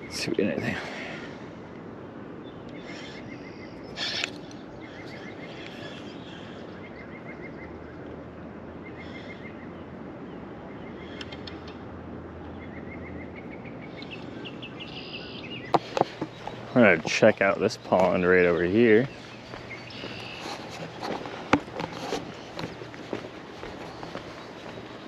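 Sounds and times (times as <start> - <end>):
bird chirping: 2.5 - 7.9, 12.5 - 25.0.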